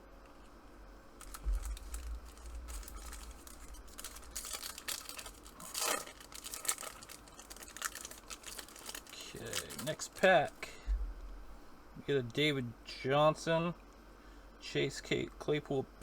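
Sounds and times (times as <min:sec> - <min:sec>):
plastic wrapper crinkling and tearing: 0:01.2 - 0:10.6
low bump: 0:01.3 - 0:03.6.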